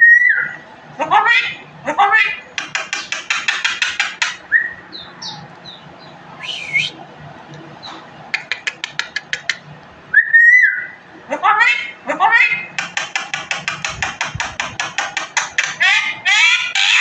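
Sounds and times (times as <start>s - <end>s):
songbird singing: 2.5s - 11.3s.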